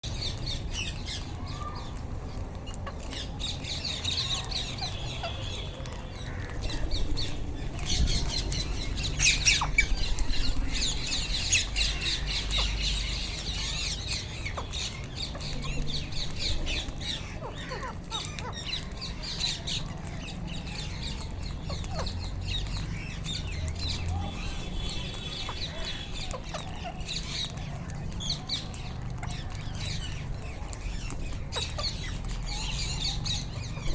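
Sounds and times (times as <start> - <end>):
parakeets squawking: 2.6 - 33.9.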